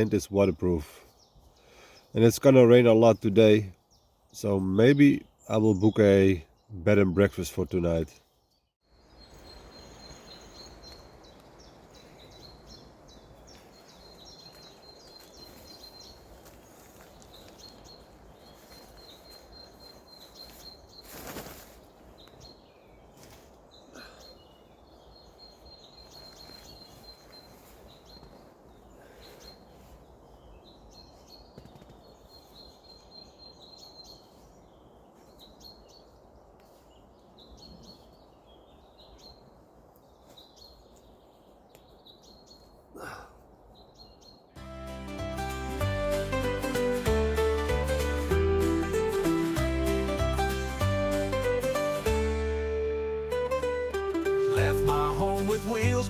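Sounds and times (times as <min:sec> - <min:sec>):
small bird chirping: 0:08.2 - 0:42.8.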